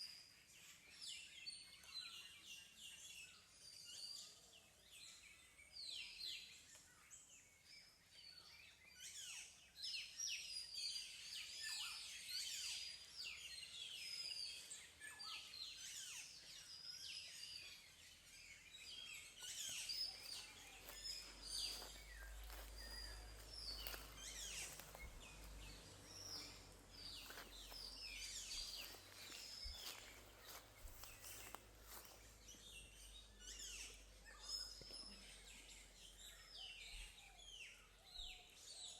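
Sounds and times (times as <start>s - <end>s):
birds singing and chirping: 0.0s - 38.9s
faint low hum: 17.8s - 38.8s.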